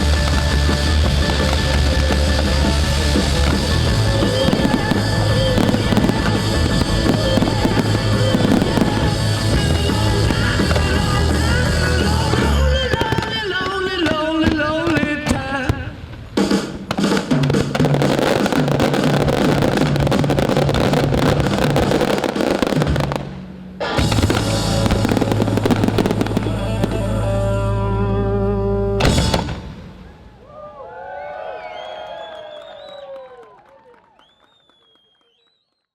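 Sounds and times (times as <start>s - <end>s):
loud music with bass line: 0.0s - 13.0s, 23.8s - 29.6s
fireworks crackling and banging: 0.0s - 27.8s, 29.0s - 30.1s.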